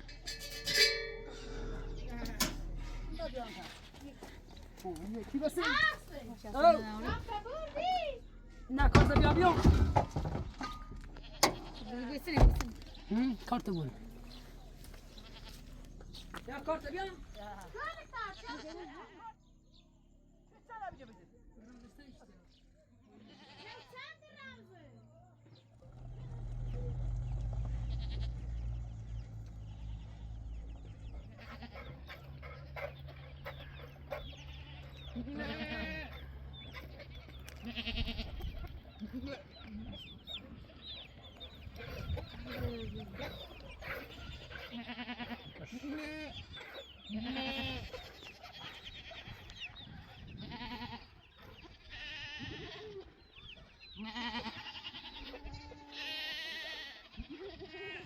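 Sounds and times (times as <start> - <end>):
low steady hum: 0.0 - 18.4
sheep bleating: 10.6 - 12.2, 12.8 - 15.9, 17.7 - 19.1, 23.2 - 24.1, 27.0 - 39.8, 41.6 - 53.1, 53.9 - 58.0.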